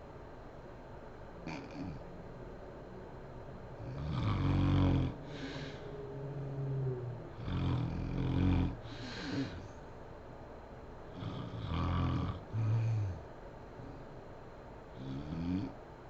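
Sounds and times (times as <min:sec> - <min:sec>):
quiet breaths: 0:01.4 - 0:15.9
woman snoring: 0:01.5 - 0:02.0, 0:03.8 - 0:06.0, 0:06.6 - 0:09.7, 0:11.1 - 0:13.2, 0:15.0 - 0:15.7.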